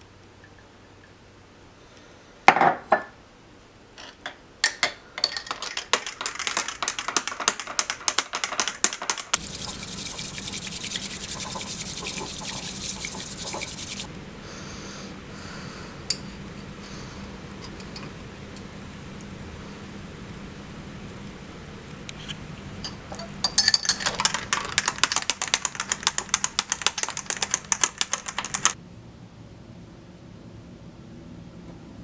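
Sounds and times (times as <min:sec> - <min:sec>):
low hum: 0:09.4 - 0:14.1
steady hiss: 0:09.4 - 0:14.1.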